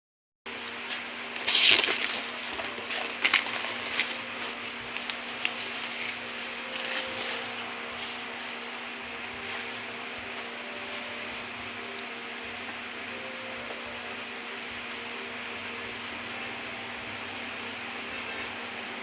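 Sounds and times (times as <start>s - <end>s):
steady background hum: 0.5s - 19.0s
packaging crinkling: 0.6s - 8.8s.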